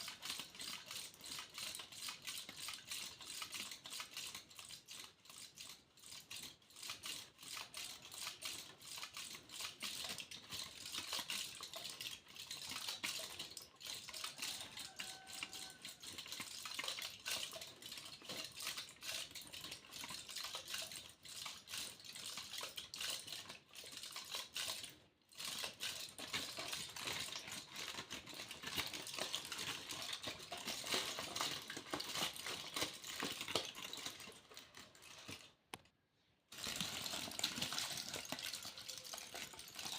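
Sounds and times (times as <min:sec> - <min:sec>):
aluminium foil crinkling: 0:26.8 - 0:35.6, 0:36.5 - 0:39.9.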